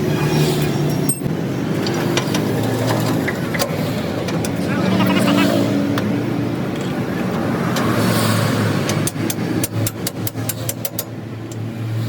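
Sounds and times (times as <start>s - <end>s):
vehicle engine and traffic hum: 0.0s - 12.0s.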